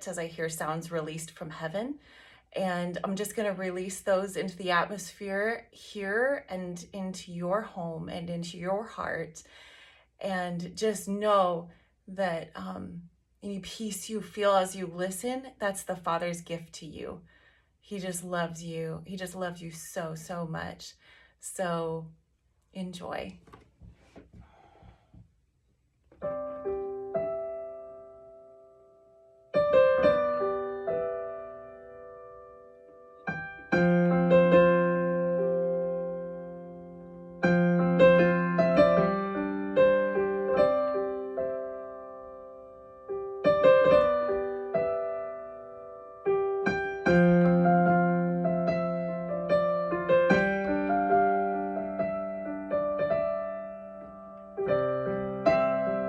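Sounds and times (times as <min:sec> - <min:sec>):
solo piano improvisation: 0:26.2 - 0:56.0.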